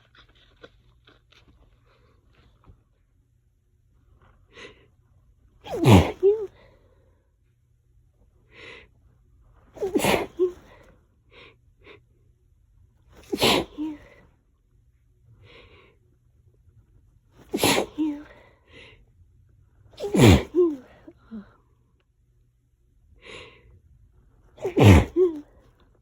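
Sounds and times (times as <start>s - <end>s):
person sneezing: 5.6s - 6.7s, 9.8s - 10.8s, 13.2s - 14.2s, 17.4s - 18.4s, 20.0s - 21.4s, 24.6s - 25.5s.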